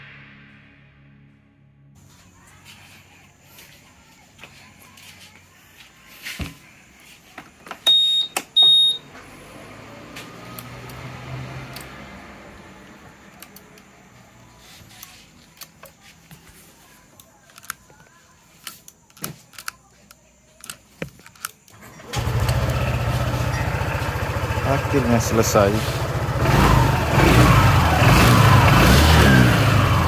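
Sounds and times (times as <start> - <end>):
low hum: 0.0 - 2.3.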